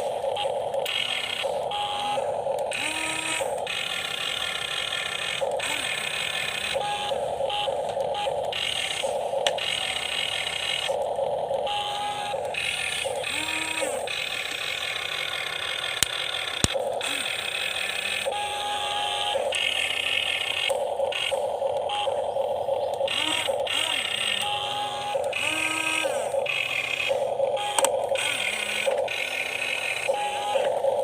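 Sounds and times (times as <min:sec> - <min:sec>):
electric motors whining: 0:00.0 - 0:31.0
sharp clicks: 0:16.0 - 0:16.8.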